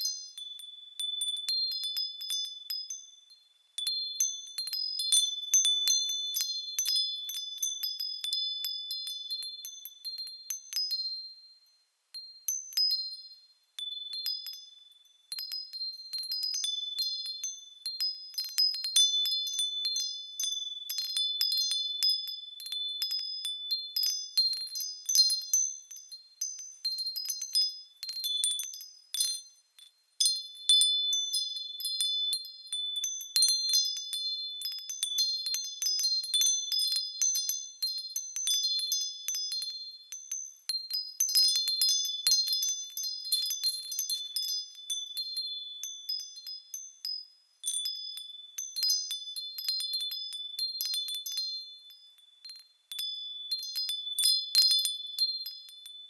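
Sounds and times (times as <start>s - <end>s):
small high-pitched bells ringing: 0.0s - 56.0s.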